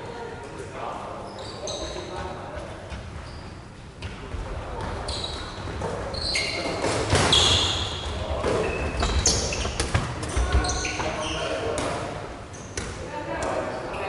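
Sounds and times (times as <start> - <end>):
short high squeaks: 1.3 - 2.1, 5.1 - 8.0.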